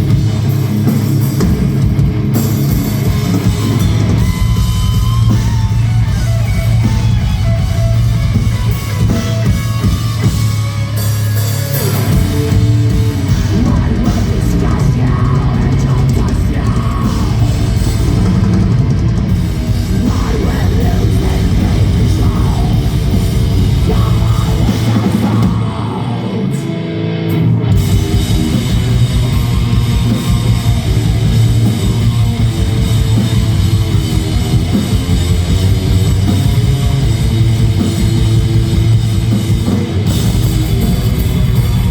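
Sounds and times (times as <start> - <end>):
drum kit: 0.0 - 41.9
metal band playing live: 0.0 - 41.9.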